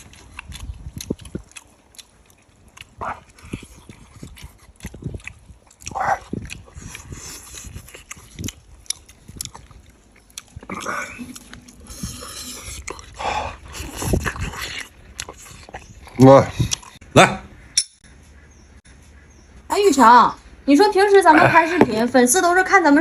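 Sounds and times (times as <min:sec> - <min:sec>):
crunching and chewing: 0:00.0 - 0:17.0.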